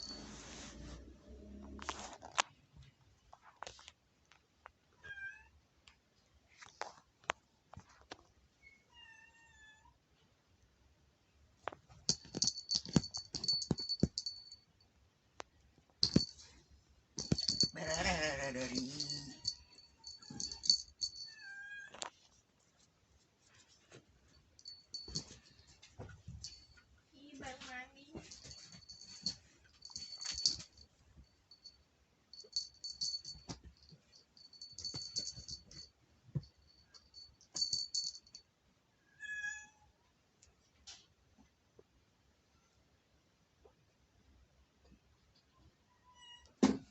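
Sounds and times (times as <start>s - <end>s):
jingle bell toy rattling: 12.1s - 14.6s, 16.0s - 16.5s, 17.2s - 21.6s, 24.6s - 25.6s, 28.2s - 30.8s, 31.5s - 35.9s, 36.5s - 38.4s.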